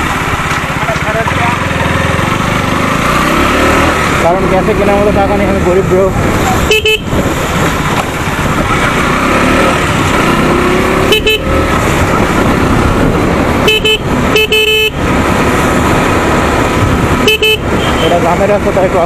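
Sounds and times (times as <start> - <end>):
motorcycle riding: 0.0 - 19.0
road rumble: 0.0 - 19.0
wind: 0.0 - 19.0
vehicle horn honking: 6.6 - 7.2, 11.0 - 11.6, 13.6 - 15.0, 17.2 - 18.3.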